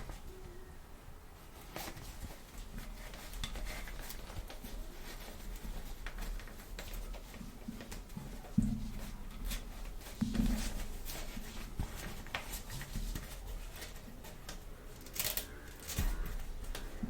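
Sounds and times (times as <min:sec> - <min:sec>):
plastic toy pieces clicking: 0:15.0 - 0:16.0.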